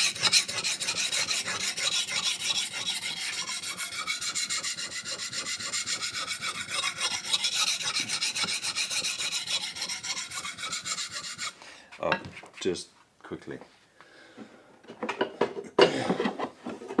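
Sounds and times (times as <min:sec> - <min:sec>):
knife scraping on sharpening stone: 0:00.0 - 0:12.7.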